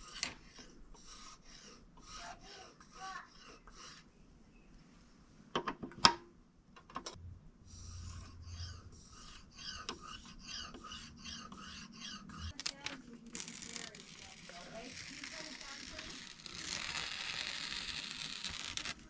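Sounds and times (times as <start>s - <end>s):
knife stroked on sharpening stone: 8.0s - 12.6s.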